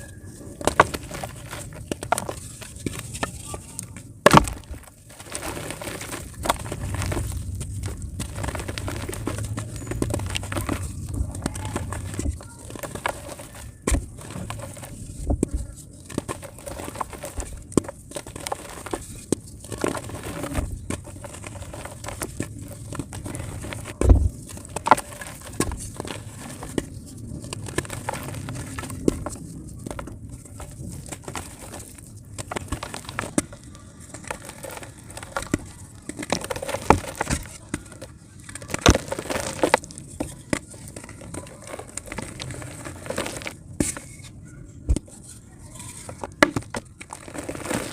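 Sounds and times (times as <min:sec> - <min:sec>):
clay crumbling in water: 0:04.2 - 0:14.9, 0:16.1 - 0:43.6.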